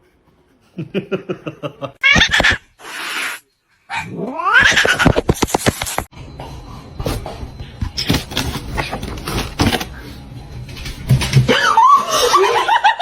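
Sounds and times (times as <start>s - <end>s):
cat hissing: 2.0s - 3.4s
cat yowling: 3.9s - 4.8s.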